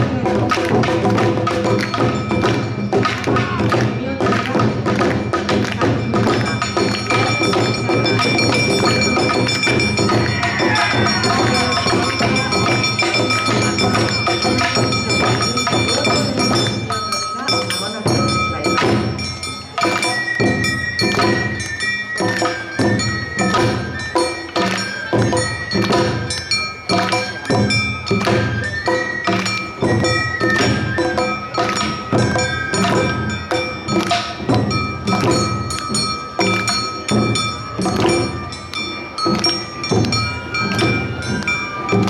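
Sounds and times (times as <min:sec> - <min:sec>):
drums beating: 0:00.0 - 0:42.0
hand gong ringing: 0:05.6 - 0:20.2.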